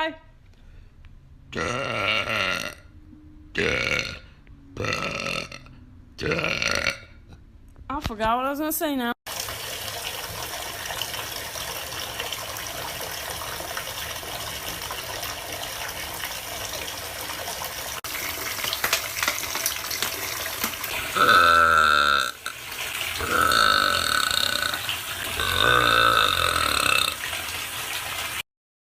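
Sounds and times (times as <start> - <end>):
girl burping: 1.5 - 2.9, 3.6 - 7.2, 21.2 - 22.5, 23.2 - 24.8, 25.4 - 27.2.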